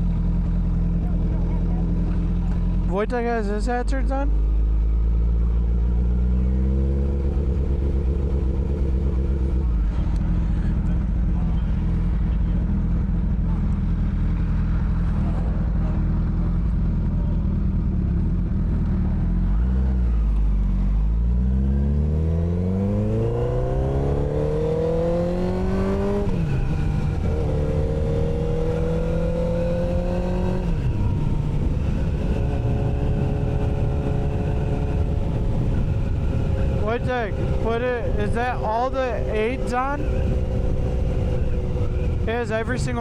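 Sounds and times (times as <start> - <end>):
motorcycle engine accelerating: 0.0 - 43.0.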